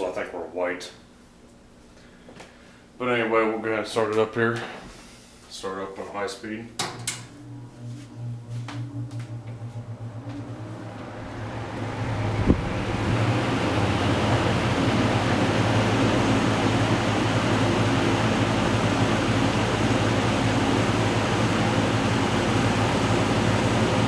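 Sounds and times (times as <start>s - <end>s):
fan running: 0.0s - 24.0s
fan switch click: 6.8s - 7.5s.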